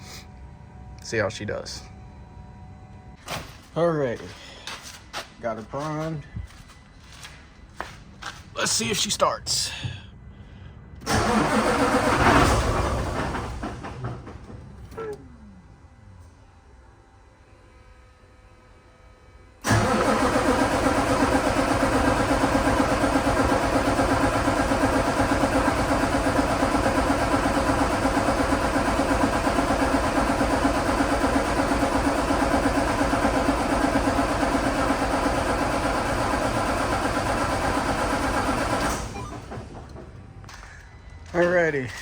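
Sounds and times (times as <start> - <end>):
diesel engine cranking: 11.0 - 16.4, 19.6 - 42.0.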